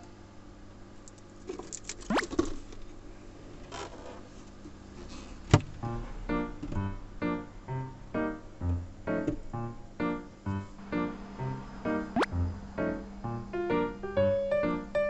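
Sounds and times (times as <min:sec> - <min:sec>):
background music: 0:05.9 - 0:15.0
quick rising zip: 0:10.8 - 0:13.1.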